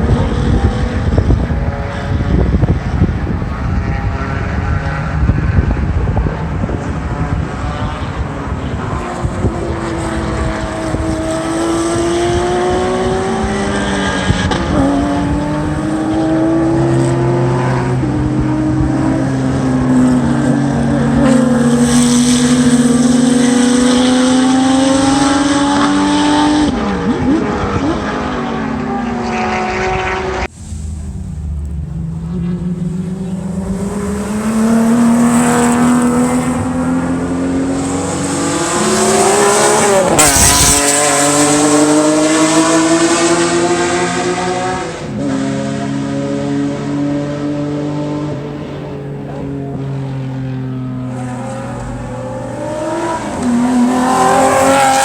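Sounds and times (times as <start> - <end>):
race car engines passing: 0.0 - 55.0.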